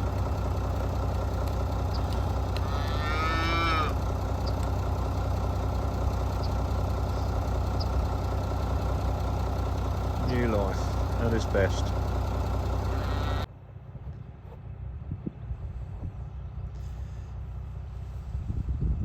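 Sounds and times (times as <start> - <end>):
engine idling: 0.0 - 19.0
cow mooing: 2.6 - 4.0, 12.9 - 13.5.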